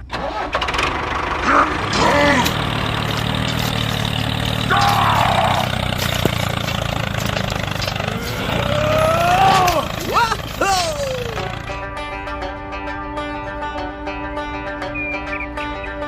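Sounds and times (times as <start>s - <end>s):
small engine idling: 0.0s - 12.1s.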